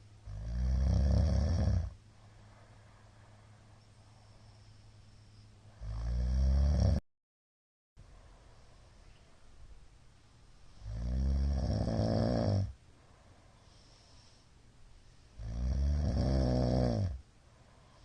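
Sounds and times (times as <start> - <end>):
man snoring loudly: 0.2 - 2.0, 5.8 - 7.0, 10.8 - 12.8, 15.4 - 17.2.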